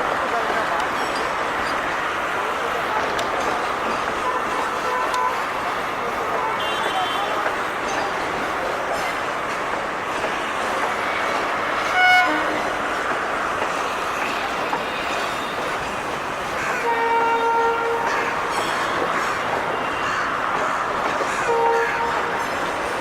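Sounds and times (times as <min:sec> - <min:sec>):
train running on rails: 0:00.0 - 0:23.0
train horn blast: 0:04.2 - 0:05.4, 0:06.4 - 0:07.5, 0:11.8 - 0:12.8, 0:16.8 - 0:18.1, 0:21.5 - 0:22.5.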